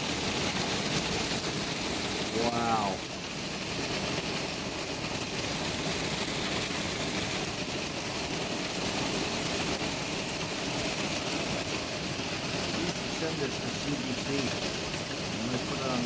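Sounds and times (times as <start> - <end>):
hail pelting ground and plants: 0.0 - 16.0.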